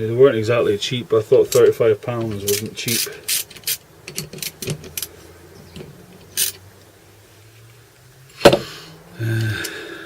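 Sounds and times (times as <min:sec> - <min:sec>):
metal tools clicking: 0:01.4 - 0:06.6.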